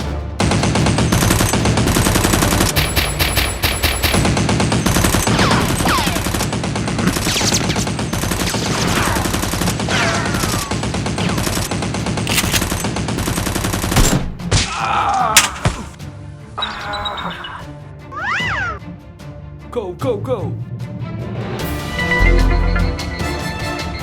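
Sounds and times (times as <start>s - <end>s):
falling whistles: 16.6s - 17.6s.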